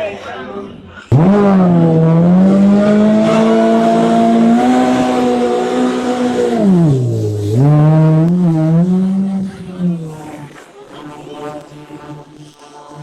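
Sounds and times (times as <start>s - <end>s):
jet ski engine revving: 1.1s - 10.4s.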